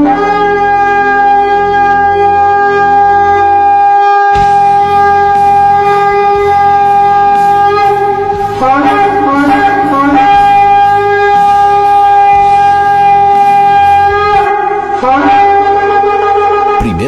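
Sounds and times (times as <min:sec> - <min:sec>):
loud horn blast: 0:00.0 - 0:17.0.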